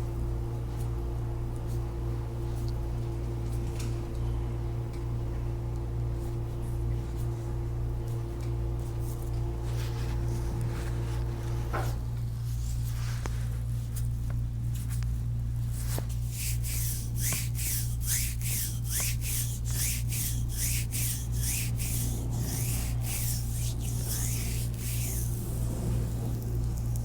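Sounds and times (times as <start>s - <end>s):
steady low hum: 0.0s - 27.0s
hands rubbing skin: 15.7s - 27.0s.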